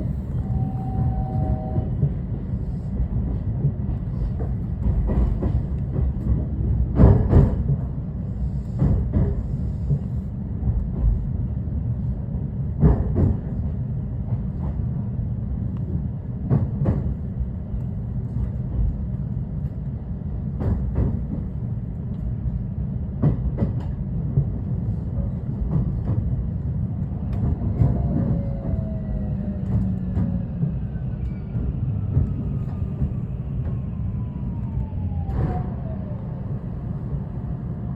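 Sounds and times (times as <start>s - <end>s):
low steady tone: 0.0s - 1.9s
train low rumble: 0.0s - 37.9s.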